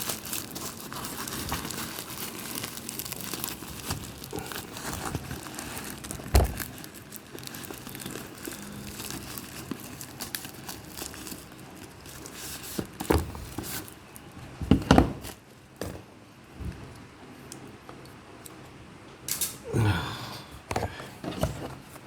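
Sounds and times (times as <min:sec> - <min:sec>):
plastic packaging crinkling: 0:00.0 - 0:14.3.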